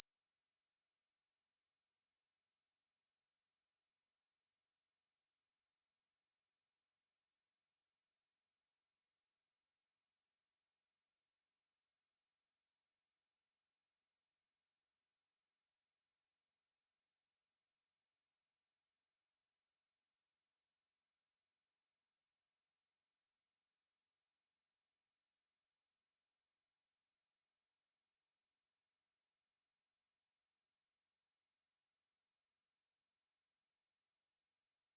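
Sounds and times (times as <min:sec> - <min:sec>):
high-pitched sine test tone: 0:18.0 - 0:34.9.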